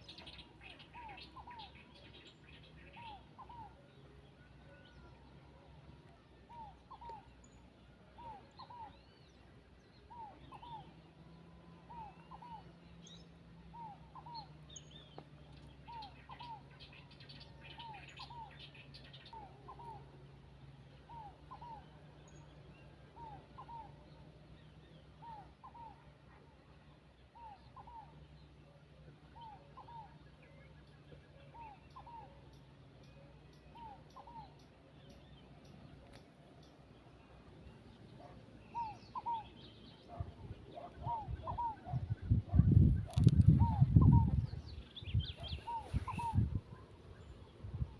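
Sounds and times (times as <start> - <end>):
birds chirping faintly: 0.0 - 47.9
dove cooing: 21.1 - 21.9, 38.2 - 47.0.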